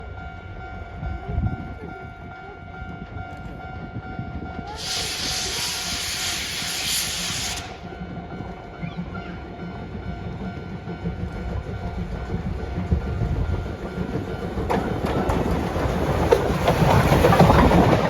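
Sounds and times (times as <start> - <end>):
steam locomotive rumbling: 0.0 - 18.0
steam hissing: 4.7 - 8.2.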